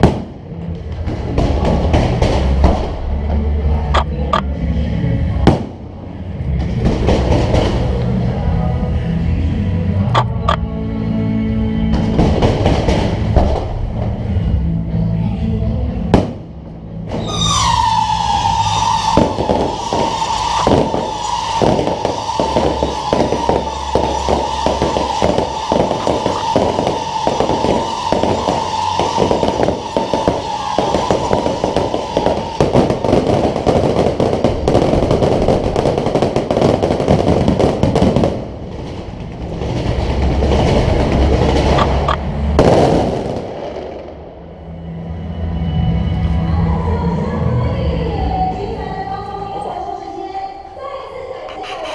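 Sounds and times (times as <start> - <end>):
firework bangs: 0.0 - 3.2, 5.4 - 6.0, 6.6 - 8.5, 11.9 - 14.1, 16.1 - 44.6
firework crackling: 0.0 - 3.2, 5.4 - 5.9, 6.6 - 8.5, 12.0 - 14.0, 17.2 - 44.6
background music: 0.0 - 51.9
firework whistling: 17.2 - 38.6, 40.3 - 44.1.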